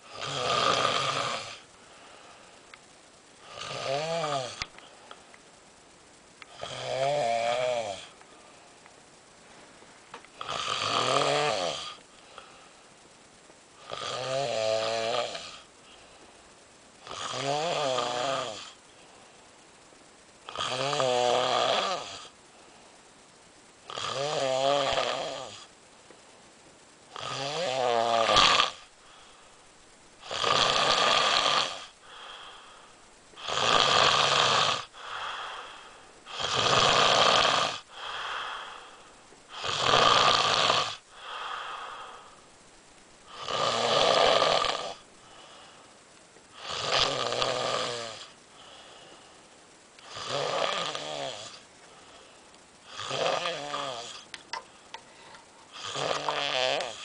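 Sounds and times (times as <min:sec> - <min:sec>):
person snoring: 0:00.0 - 0:01.6, 0:03.4 - 0:04.7, 0:06.5 - 0:08.2, 0:10.4 - 0:12.6, 0:13.8 - 0:15.7, 0:17.0 - 0:18.8, 0:20.4 - 0:22.3, 0:23.9 - 0:25.7, 0:27.1 - 0:29.4, 0:30.2 - 0:42.4, 0:43.3 - 0:45.8, 0:46.5 - 0:49.2, 0:50.0 - 0:54.3, 0:55.7 - 0:57.0
soft breathing: 0:01.7 - 0:02.8, 0:11.9 - 0:13.1, 0:32.0 - 0:33.2, 0:34.9 - 0:36.2, 0:37.9 - 0:39.4, 0:41.1 - 0:42.5, 0:45.1 - 0:46.6, 0:48.4 - 0:50.1, 0:51.5 - 0:52.6, 0:54.1 - 0:57.0.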